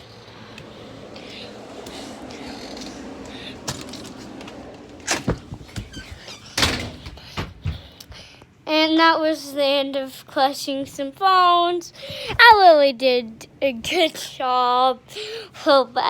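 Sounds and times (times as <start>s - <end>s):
faint background hum: 0.0s - 16.0s
sharp knocks and thuds: 5.1s - 8.0s.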